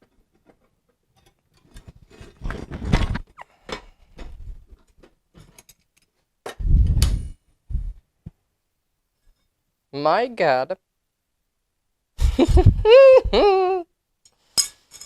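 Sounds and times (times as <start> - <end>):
metal clinks and scrapes: 14.3 - 15.0.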